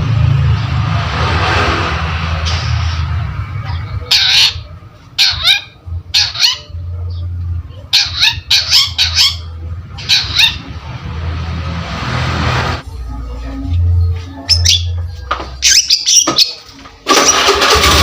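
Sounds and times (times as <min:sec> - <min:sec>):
bird harsh rasping calls: 0:03.7 - 0:10.8.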